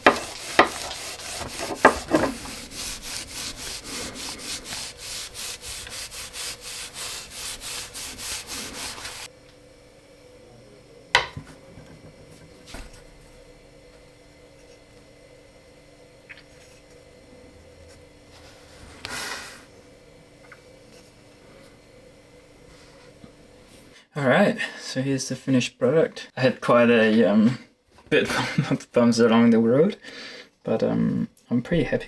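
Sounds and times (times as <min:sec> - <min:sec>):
rubbing strokes on wood: 0:00.0 - 0:09.3.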